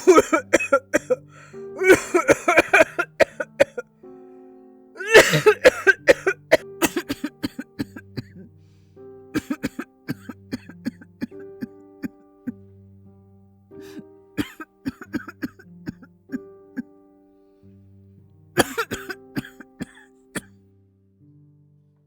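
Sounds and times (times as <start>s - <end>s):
woman coughing: 0.0s - 1.2s, 1.8s - 3.8s, 5.0s - 8.5s, 9.4s - 11.4s, 13.8s - 16.0s, 18.6s - 20.5s
soft background music: 0.0s - 22.0s.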